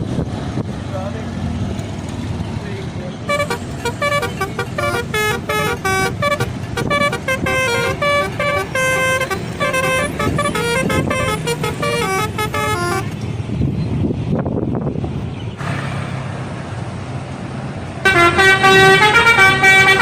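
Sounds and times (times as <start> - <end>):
bus horn playing a melody: 3.3 - 13.2, 18.0 - 20.0.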